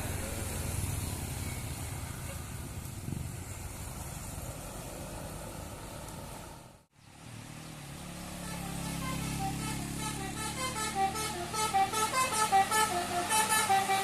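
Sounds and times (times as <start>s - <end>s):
bus engine droning: 0.0s - 14.0s
road traffic passing: 0.0s - 14.0s
musical horn short tones: 8.4s - 14.0s.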